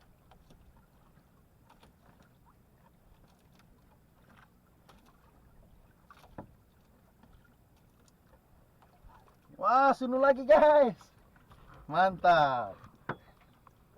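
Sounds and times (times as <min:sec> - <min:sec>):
faint ticks: 0:07.7 - 0:09.0.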